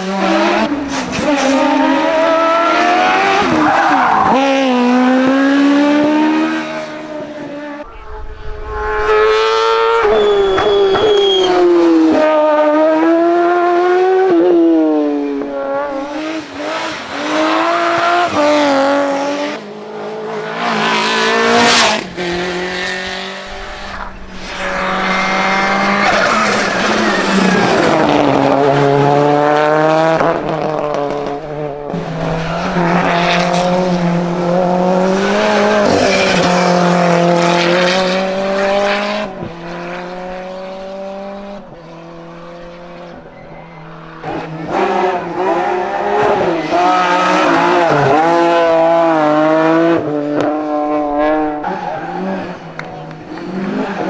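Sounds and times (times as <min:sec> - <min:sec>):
race car engine revving: 0:00.0 - 0:54.0
tyre squeal: 0:07.8 - 0:12.3, 0:23.5 - 0:28.8, 0:32.0 - 0:37.8, 0:43.2 - 0:44.5.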